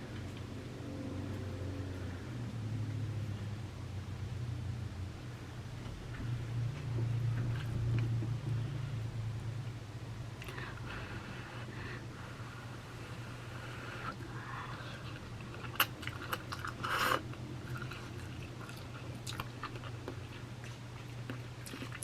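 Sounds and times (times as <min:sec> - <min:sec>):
steady low hum: 0:00.0 - 0:22.0
person chewing noodles: 0:13.8 - 0:22.0.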